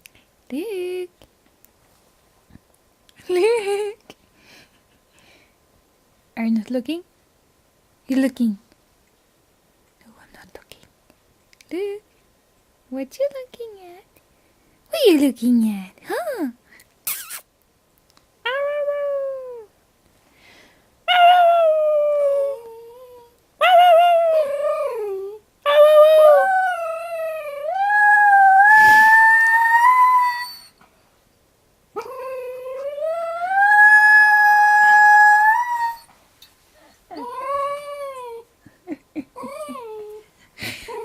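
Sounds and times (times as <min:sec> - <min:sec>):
dog howling: 0:21.2 - 0:30.7, 0:32.0 - 0:36.1.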